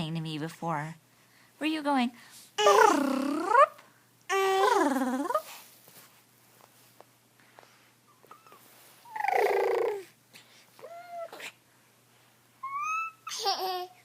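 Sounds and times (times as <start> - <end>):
baby making buzzy brrrr sound: 2.6 - 3.7, 9.1 - 10.2
baby cooing softly: 2.6 - 5.5, 8.1 - 10.2, 10.8 - 11.6.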